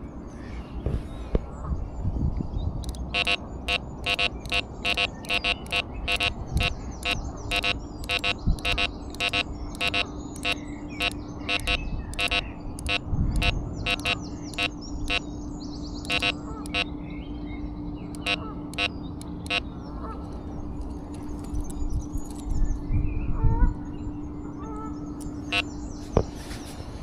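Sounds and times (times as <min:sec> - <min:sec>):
electronic synthesizer music: 0:02.9 - 0:15.2, 0:16.1 - 0:16.9, 0:18.2 - 0:18.9
steady held synth tone: 0:02.9 - 0:15.4, 0:16.0 - 0:16.9, 0:18.2 - 0:19.7.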